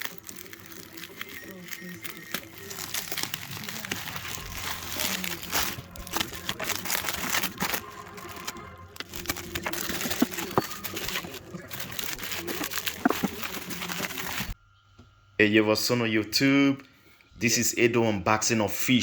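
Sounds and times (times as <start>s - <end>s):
packaging crinkling: 0.0s - 14.6s.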